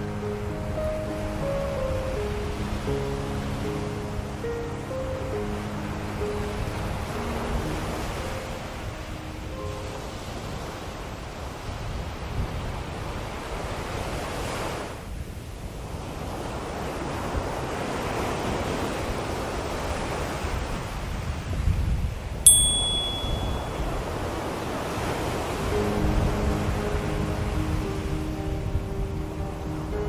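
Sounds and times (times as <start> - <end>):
soft music: 0.0 - 11.4, 22.5 - 30.0
ocean waves: 0.0 - 21.4, 22.5 - 30.0
small bell ringing: 22.5 - 24.1.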